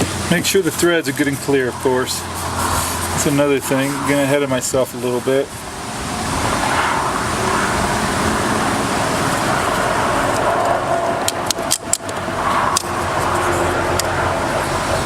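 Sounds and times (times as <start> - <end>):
rushing background noise: 0.0 - 15.0.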